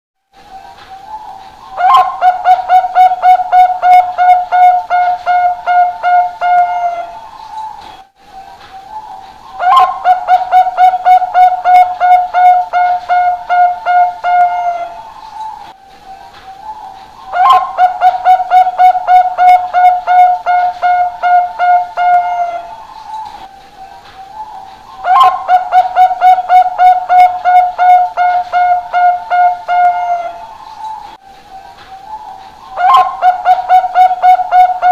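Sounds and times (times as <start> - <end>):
dove cooing: 1.4 - 7.2, 9.0 - 15.0, 16.6 - 22.8, 24.4 - 31.0, 32.1 - 34.9.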